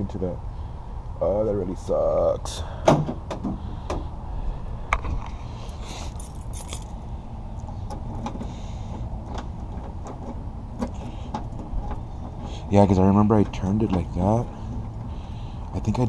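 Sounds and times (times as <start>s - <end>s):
steady low rumble: 3.6s - 16.0s
keys jangling: 5.6s - 7.0s.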